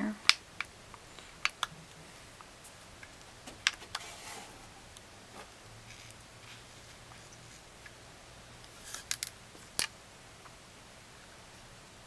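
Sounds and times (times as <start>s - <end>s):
soft rub: 4.0s - 7.7s
small plastic parts clicking: 8.8s - 9.9s.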